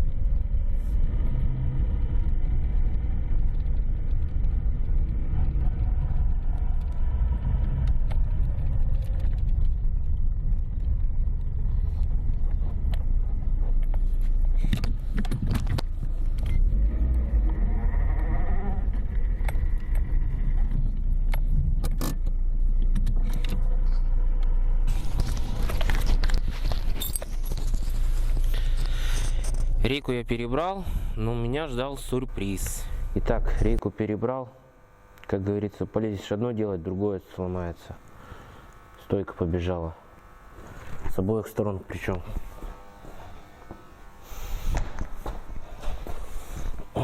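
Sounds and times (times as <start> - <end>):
tyres and suspension rumbling: 0.0 - 33.8.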